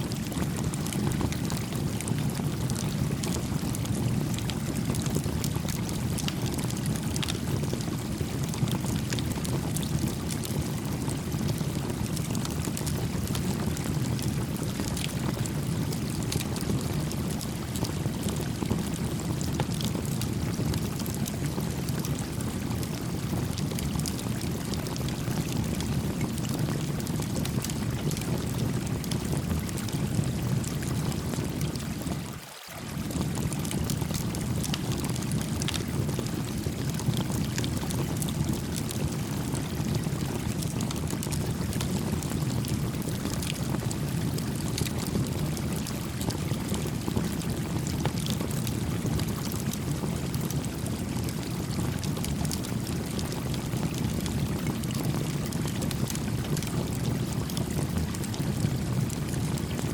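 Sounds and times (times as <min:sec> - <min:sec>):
creek water flowing: 0:31.7 - 0:35.2.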